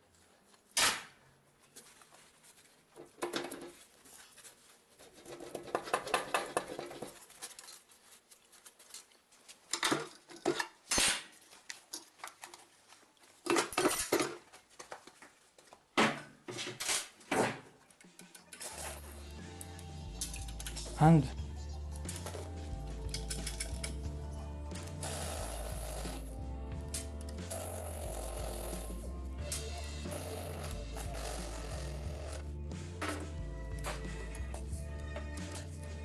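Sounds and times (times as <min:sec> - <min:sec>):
metal engine parts clinking: 0:22.1 - 0:24.0.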